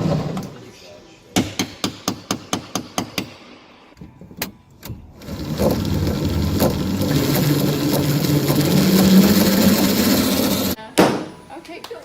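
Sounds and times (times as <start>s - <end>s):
low machine hum: 5.2s - 10.8s.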